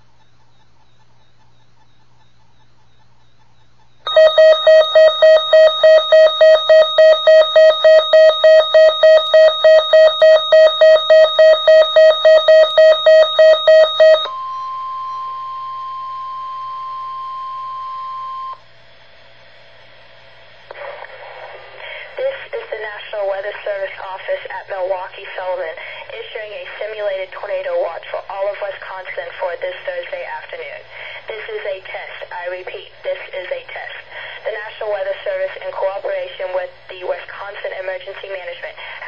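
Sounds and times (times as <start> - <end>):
steady high alert tone: 4.1 - 18.6
weather alert radio beeping: 4.1 - 18.6, 20.7 - 39.0
faint radio hiss: 14.3 - 39.0.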